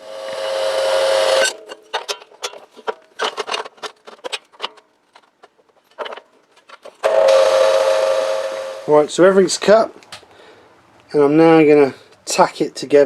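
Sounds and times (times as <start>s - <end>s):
bandsaw cutting steel: 0.0s - 2.2s, 7.0s - 9.1s.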